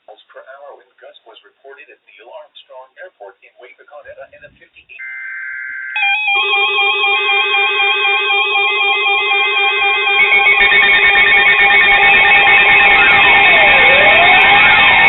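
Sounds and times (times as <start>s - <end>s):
warbling electronic alarm beeps: 5.0s - 15.0s.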